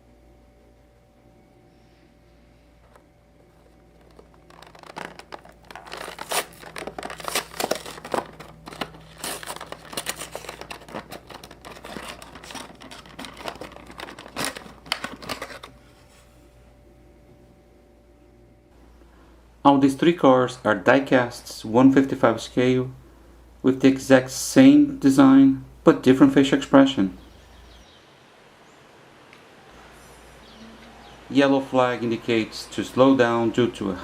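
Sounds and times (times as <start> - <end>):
plastic packaging crinkling: 2.9 - 15.9.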